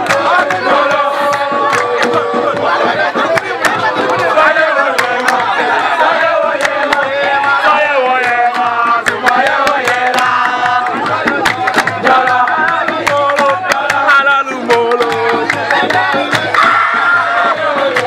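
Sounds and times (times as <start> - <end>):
person singing: 0.0 - 3.2
fast percussion beat: 0.0 - 18.0.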